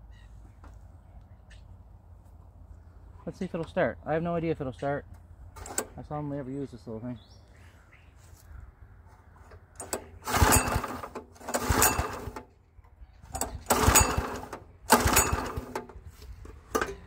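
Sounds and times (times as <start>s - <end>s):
recoil rope pulled: 9.8s - 12.4s, 13.4s - 16.3s
small engine cranking: 9.8s - 12.5s, 13.3s - 16.0s.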